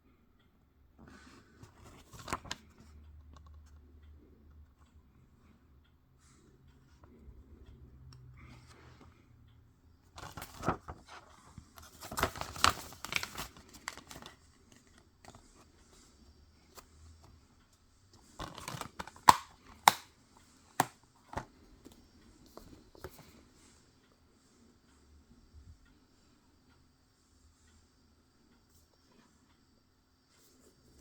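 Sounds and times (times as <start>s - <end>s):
plastic packaging crinkling and tearing: 11.9s - 14.3s.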